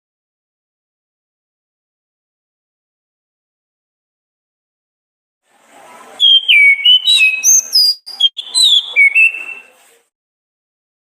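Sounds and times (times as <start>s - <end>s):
thrush whistling song: 6.2s - 9.8s.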